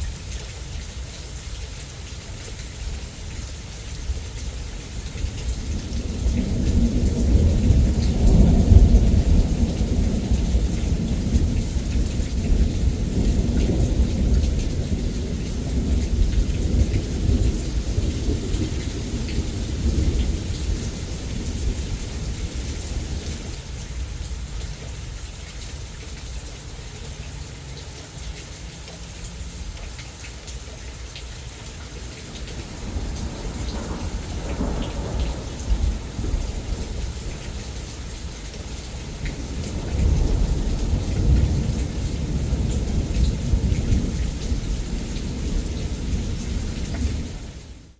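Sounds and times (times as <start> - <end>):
heavy rain pouring: 0.0 - 47.9
rolling thunder: 5.1 - 23.6, 32.4 - 47.9.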